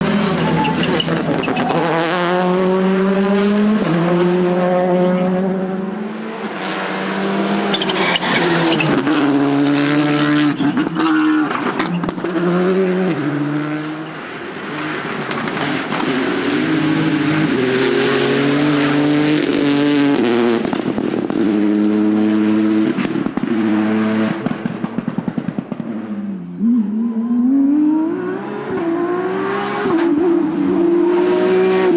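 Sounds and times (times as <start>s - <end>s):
rally car engine revving: 0.0s - 31.9s
engine cracks and pops: 6.4s - 12.5s, 14.2s - 16.2s, 24.4s - 26.1s.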